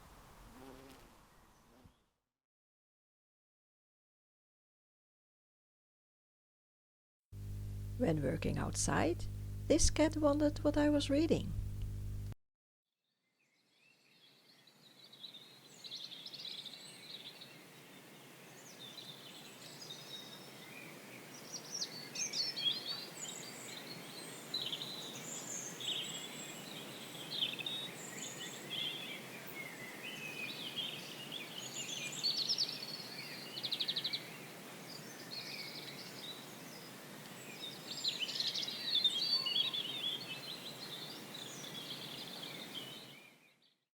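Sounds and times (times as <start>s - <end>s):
low background hiss: 7.4s - 12.4s
songbirds singing: 14.2s - 43.7s.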